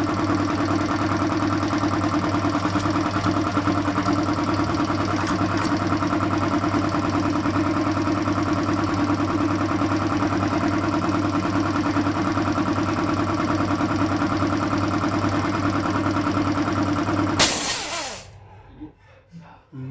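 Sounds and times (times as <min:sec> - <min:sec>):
compressor running with pulsing beat: 0:00.0 - 0:18.3.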